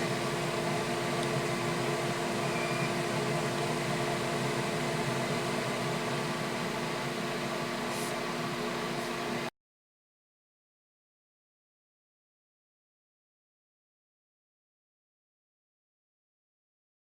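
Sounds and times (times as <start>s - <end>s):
machine hum with steady tones: 0.0s - 9.5s.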